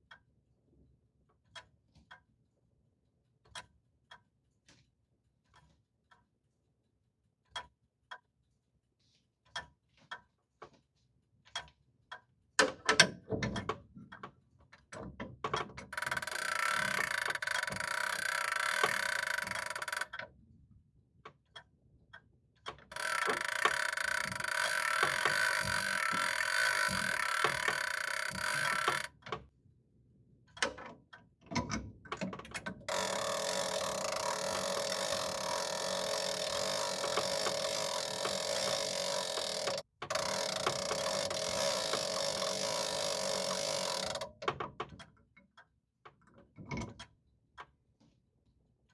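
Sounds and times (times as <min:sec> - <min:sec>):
grandfather clock ticking: 0:16.0 - 0:20.2, 0:22.9 - 0:29.1, 0:32.9 - 0:44.3.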